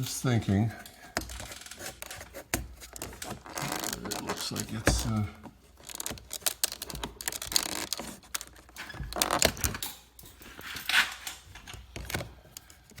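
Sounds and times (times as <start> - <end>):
pry tool scraping plastic trim: 0.8 - 5.2.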